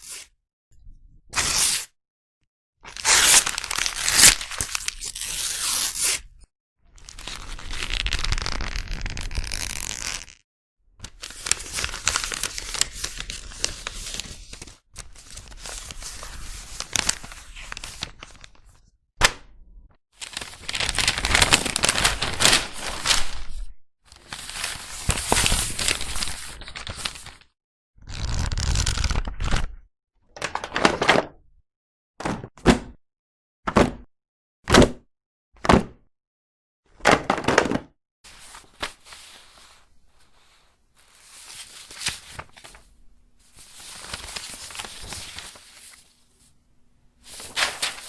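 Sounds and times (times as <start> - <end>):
paper crumpling and rustling: 2.9 - 6.2, 11.0 - 18.6, 20.2 - 27.5, 38.3 - 42.9, 43.5 - 46.5, 47.2 - 48.0.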